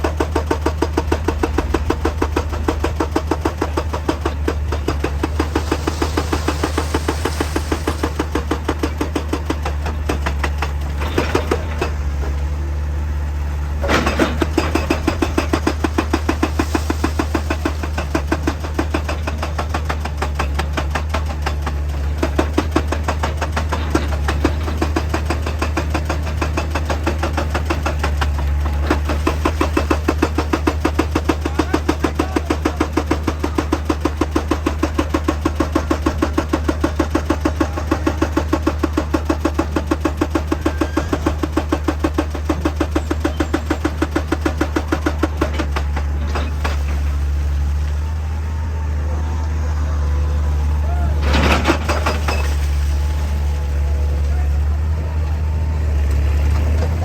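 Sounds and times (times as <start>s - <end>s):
diesel machinery droning: 0.0s - 19.5s, 38.8s - 57.0s.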